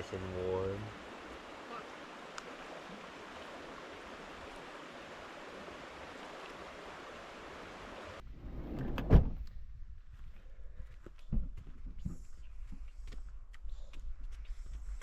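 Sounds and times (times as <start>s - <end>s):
river rushing: 0.0s - 8.2s.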